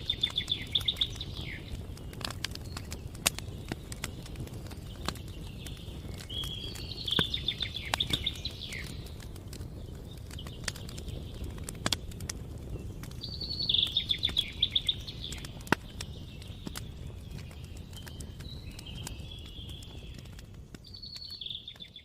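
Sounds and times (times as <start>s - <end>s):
songbird trilling: 0.0s - 1.8s, 6.2s - 9.0s, 13.2s - 16.2s
campfire crackling: 0.0s - 22.0s.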